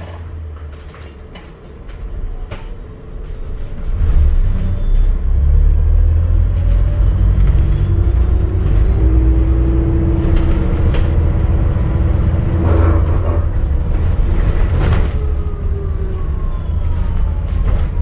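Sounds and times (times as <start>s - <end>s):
bus engine low rumble: 0.0s - 18.0s
held whine: 7.0s - 13.7s.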